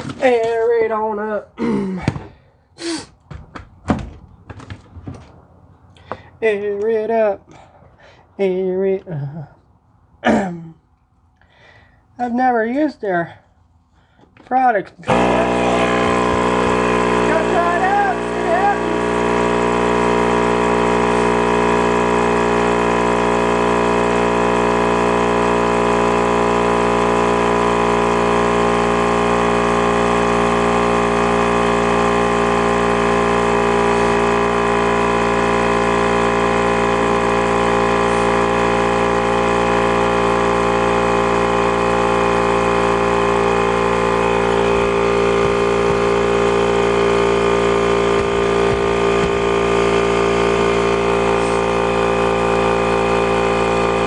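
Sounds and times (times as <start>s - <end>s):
motor-driven machine running: 15.0s - 54.0s.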